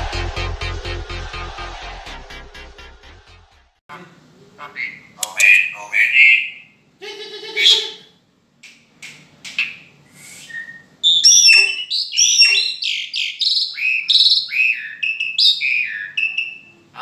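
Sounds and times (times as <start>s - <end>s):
starling whistles and chirps: 4.8s - 6.7s, 9.6s - 16.7s.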